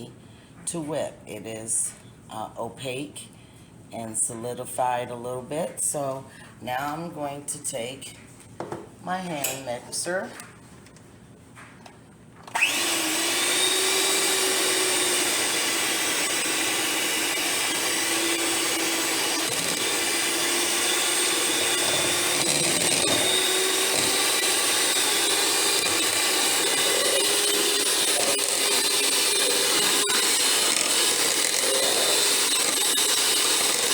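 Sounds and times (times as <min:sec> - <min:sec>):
electric hand mixer whining: 0:12.5 - 0:33.9.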